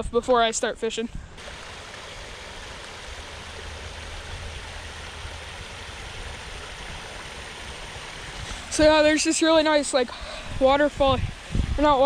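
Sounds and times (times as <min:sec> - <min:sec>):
creek water rushing: 0:01.4 - 0:12.0.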